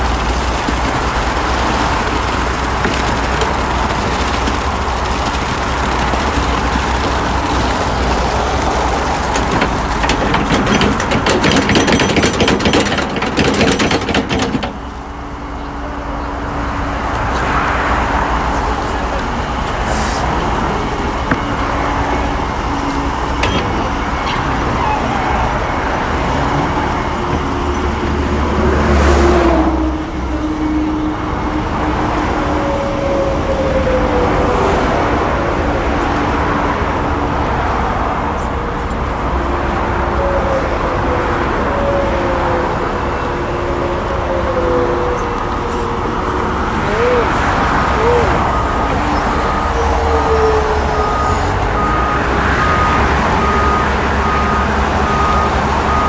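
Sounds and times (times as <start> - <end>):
mechanical noise: 0.0 - 15.0
engine rumble: 0.0 - 56.0.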